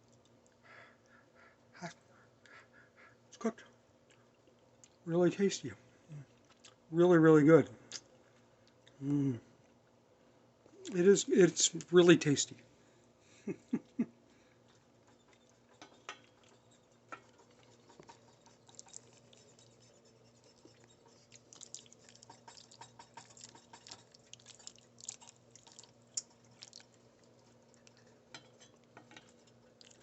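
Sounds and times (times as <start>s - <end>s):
faint low hum: 0.0s - 30.0s
chewing with wet mouth clicks: 4.0s - 5.0s, 6.2s - 6.9s, 7.9s - 9.0s, 15.0s - 19.8s, 20.4s - 30.0s.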